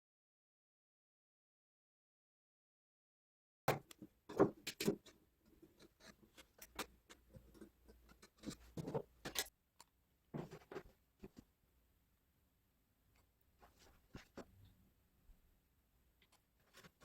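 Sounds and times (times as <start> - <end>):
parts clattering: 3.7 - 9.5.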